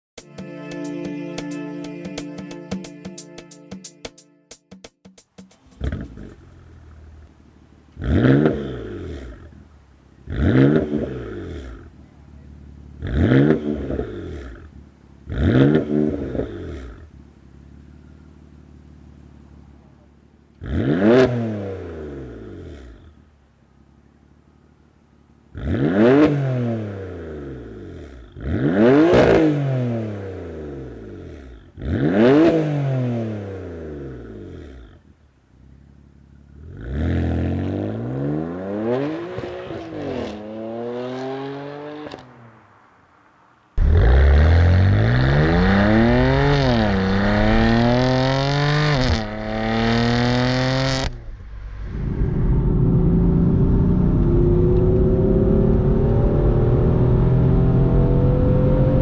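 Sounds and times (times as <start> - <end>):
car engine revving: 5.6 - 59.0
car accelerating hard: 5.7 - 7.0, 7.9 - 9.6, 10.2 - 12.0, 12.8 - 17.2, 20.5 - 23.2, 25.5 - 35.8, 36.5 - 42.8, 43.8 - 59.0.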